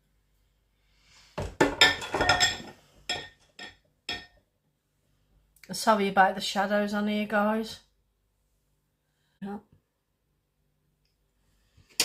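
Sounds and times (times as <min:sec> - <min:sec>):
crockery clattering and clinking: 0:01.4 - 0:04.4.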